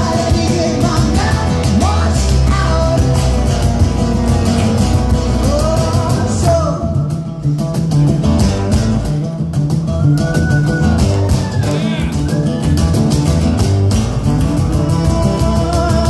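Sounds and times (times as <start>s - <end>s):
person singing lead vocal: 0.0s - 3.4s, 5.2s - 7.3s, 14.6s - 16.0s
bass guitar: 0.0s - 16.0s
strummed acoustic guitar: 0.0s - 16.0s.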